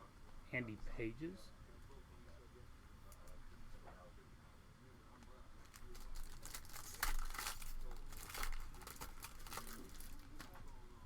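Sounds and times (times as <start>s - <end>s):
wrapper crinkling and tearing: 5.6s - 10.6s.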